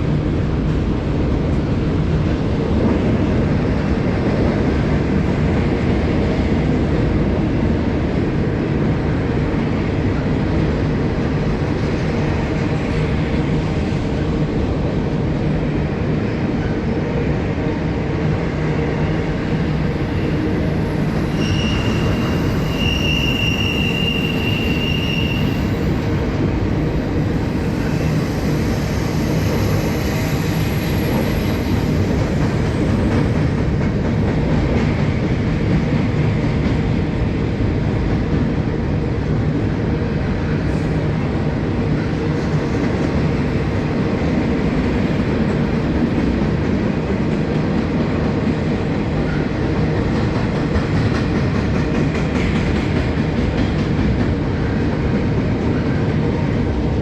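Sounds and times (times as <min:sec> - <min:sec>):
freight train rumbling past: 0:00.0 - 0:57.0
high wheel squeal: 0:21.2 - 0:26.0.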